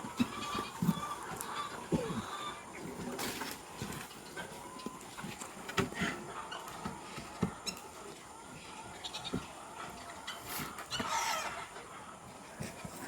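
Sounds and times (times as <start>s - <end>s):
farm animal calling: 0.0s - 2.9s, 7.6s - 12.1s.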